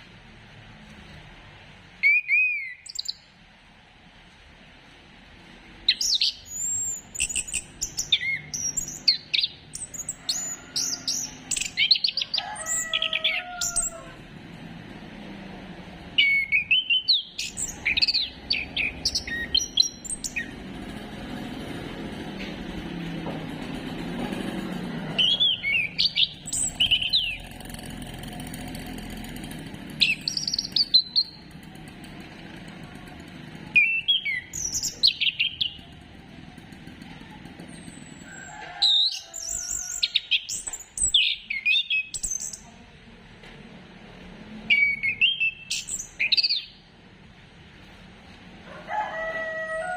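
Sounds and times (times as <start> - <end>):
bird whistling song: 2.0 - 3.2, 5.9 - 14.0, 16.2 - 20.5, 25.2 - 27.4, 30.0 - 31.4, 38.4 - 42.6, 44.7 - 46.8.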